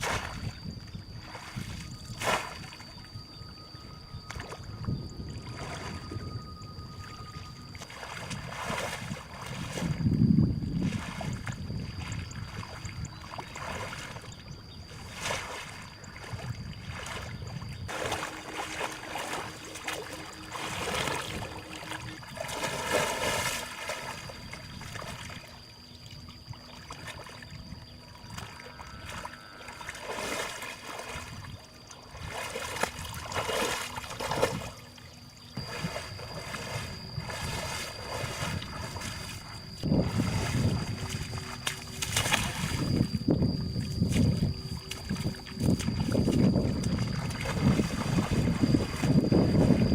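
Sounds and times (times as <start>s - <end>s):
water sloshing and trickling: 0.0s - 49.9s.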